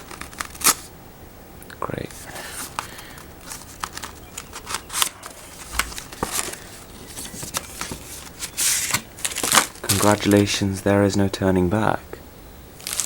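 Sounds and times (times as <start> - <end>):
packaging rustling and crinkling: 0.0 - 0.9, 2.1 - 10.5, 12.8 - 13.0.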